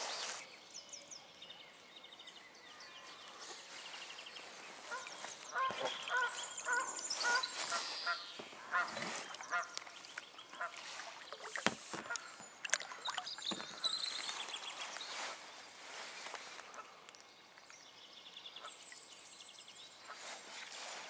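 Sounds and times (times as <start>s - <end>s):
high thin bird chirps: 3.4s - 16.8s
goose honking: 4.9s - 9.7s.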